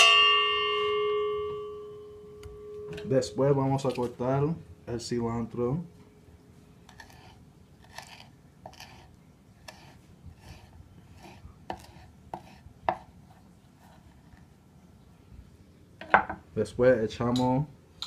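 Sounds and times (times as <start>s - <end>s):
knife chopping herbs: 6.9s - 14.2s.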